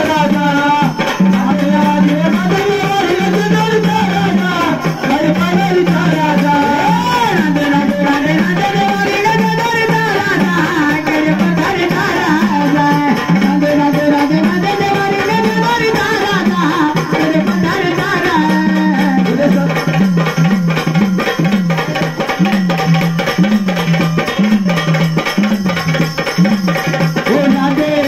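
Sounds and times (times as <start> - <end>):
fast percussion strokes: 0.0 - 28.0
hand drumming with sliding pitch: 0.0 - 28.0.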